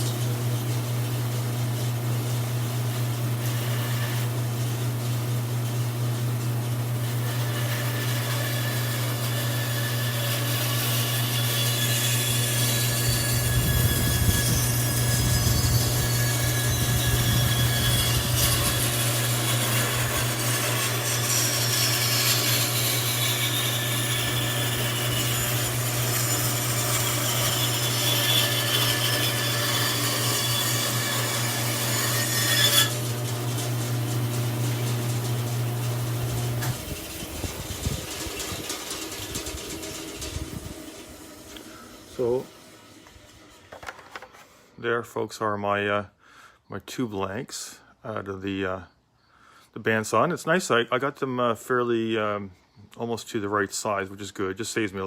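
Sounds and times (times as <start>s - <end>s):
bandsaw humming: 0.0s - 44.4s
bandsaw blade cutting wood: 3.3s - 4.8s, 7.0s - 44.4s.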